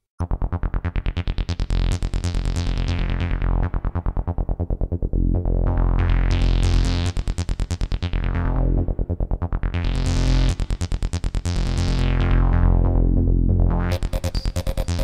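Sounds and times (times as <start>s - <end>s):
synthesizer fast repeated notes: 13.8s - 15.0s.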